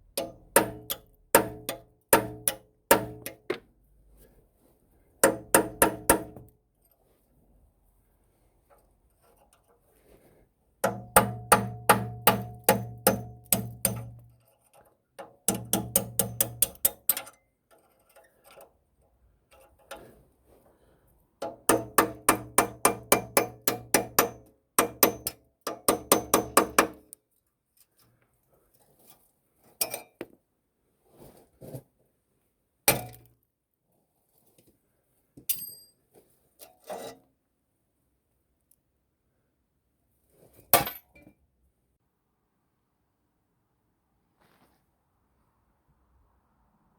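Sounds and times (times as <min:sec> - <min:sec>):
hammer striking metal: 0:00.2 - 0:03.4, 0:10.8 - 0:14.3, 0:15.5 - 0:17.1, 0:21.5 - 0:27.0.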